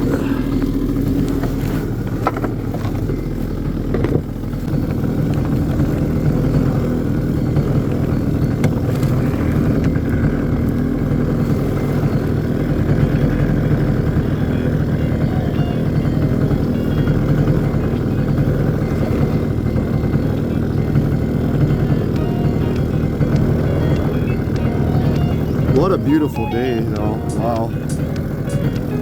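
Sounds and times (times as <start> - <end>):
outboard motor running: 0.0 - 29.0.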